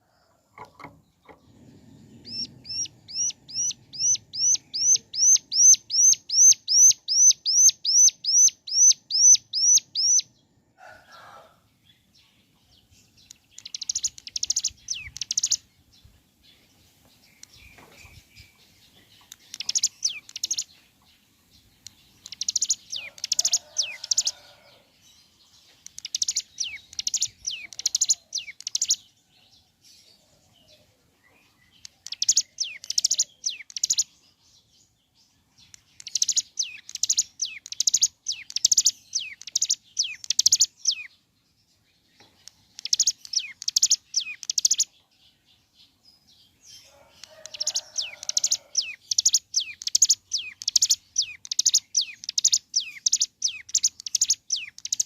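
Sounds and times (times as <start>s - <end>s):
bird high-pitched chattering: 2.2s - 10.3s, 13.3s - 15.6s, 19.2s - 20.7s, 21.8s - 24.3s, 25.8s - 29.0s, 31.8s - 34.1s, 35.7s - 41.1s, 42.4s - 44.9s, 47.2s - 55.0s.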